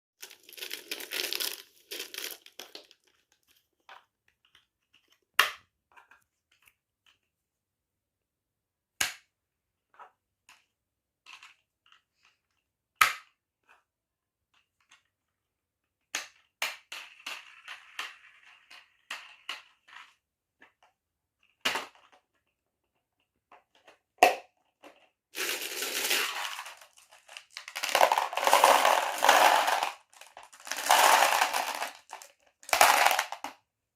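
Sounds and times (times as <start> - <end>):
marbles rolling and clacking on wood: 16.2 - 20.2, 24.8 - 33.6.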